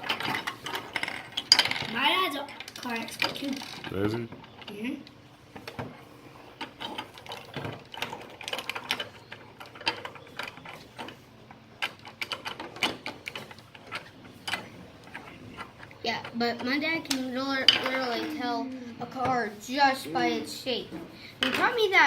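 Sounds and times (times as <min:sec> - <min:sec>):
plastic toy parts clicking and rattling: 0:00.0 - 0:04.9, 0:06.6 - 0:11.2, 0:11.8 - 0:18.4.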